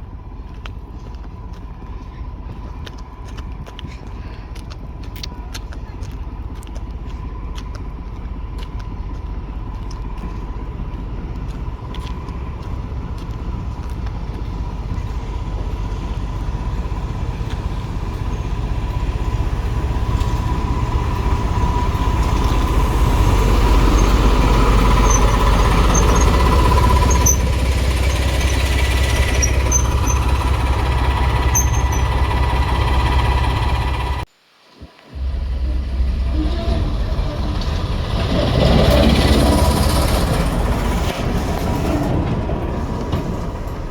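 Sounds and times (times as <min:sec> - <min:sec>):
train rumbling: 0:00.0 - 0:43.9
brief high squeaks: 0:23.9 - 0:30.6, 0:31.4 - 0:32.3.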